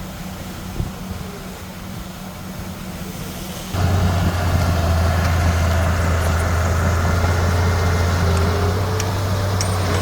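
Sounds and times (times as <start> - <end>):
diesel engine running: 1.2 - 10.0.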